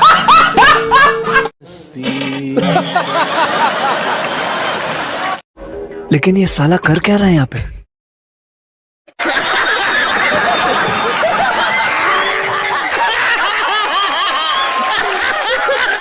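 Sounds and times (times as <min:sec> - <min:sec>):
crowd laughing: 0:00.0 - 0:01.5, 0:02.4 - 0:05.4, 0:09.2 - 0:16.0.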